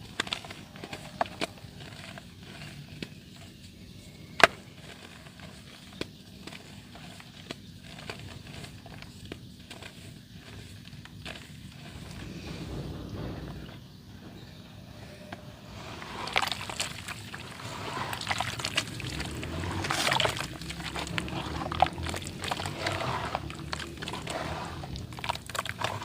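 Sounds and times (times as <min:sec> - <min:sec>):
wet dirt crumbling: 0:00.0 - 0:26.0
dirt snapping: 0:15.6 - 0:26.0.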